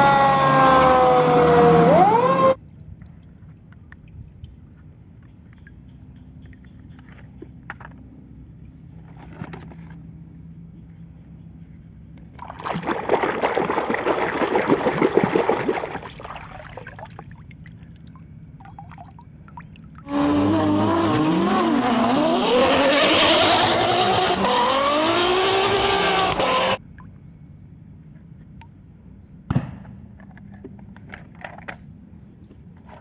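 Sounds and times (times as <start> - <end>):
racing car engine revving: 0.0 - 2.6, 20.1 - 26.8
water pouring: 12.6 - 20.1.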